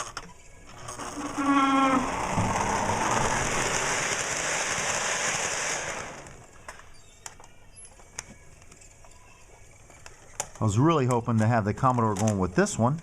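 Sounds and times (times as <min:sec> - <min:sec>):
toy train hissing crackle: 0:00.4 - 0:10.6.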